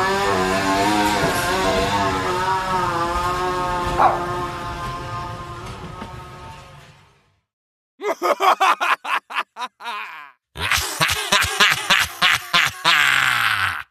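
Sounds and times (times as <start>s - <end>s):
demonic voice laughing: 8.0s - 13.9s.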